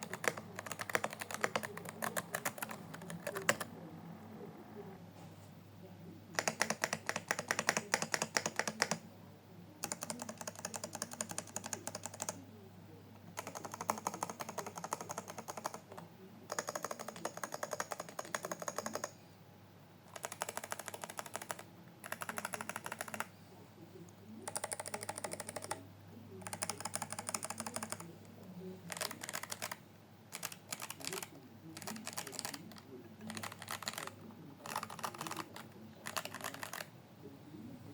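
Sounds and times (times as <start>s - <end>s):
keyboard typing: 0.0s - 3.7s, 6.3s - 9.0s, 9.8s - 12.4s, 13.3s - 19.2s, 20.1s - 23.3s, 24.4s - 25.8s, 26.4s - 28.1s, 28.8s - 36.9s.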